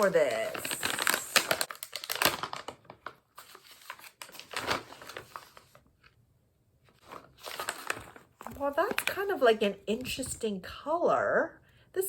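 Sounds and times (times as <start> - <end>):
plastic snack bag crinkling: 0.0 - 5.8, 7.0 - 9.6.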